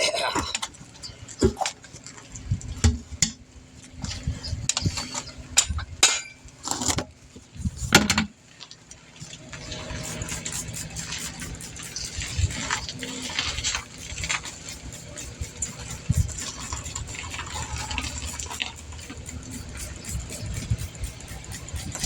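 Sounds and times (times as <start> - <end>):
vehicle engine running: 9.4 - 22.0.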